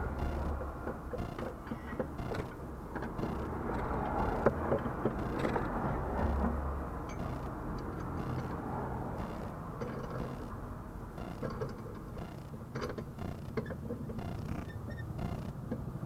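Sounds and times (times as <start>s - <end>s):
suspension knocks and clicks: 0.0s - 8.6s, 9.2s - 10.6s, 11.2s - 15.9s.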